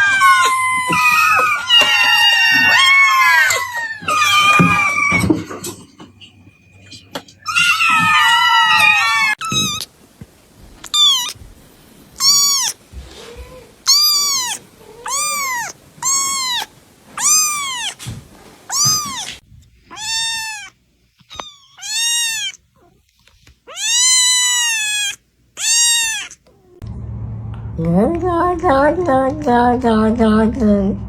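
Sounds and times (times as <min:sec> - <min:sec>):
cat meowing: 0:00.0 - 0:05.5, 0:07.4 - 0:09.9, 0:10.8 - 0:11.4, 0:12.2 - 0:18.1, 0:18.7 - 0:23.0, 0:23.6 - 0:26.8.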